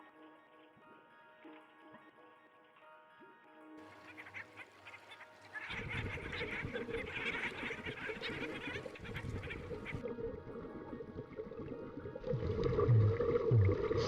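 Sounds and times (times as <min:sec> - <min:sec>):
ducks quacking and honking: 0:03.9 - 0:10.1.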